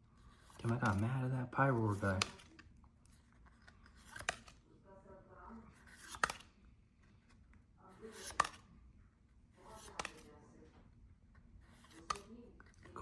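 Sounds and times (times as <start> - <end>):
trading cards swishing and snapping: 0.4 - 1.2, 1.8 - 2.7, 3.4 - 4.6, 5.9 - 6.6, 8.1 - 8.7, 9.7 - 10.3, 11.7 - 12.4.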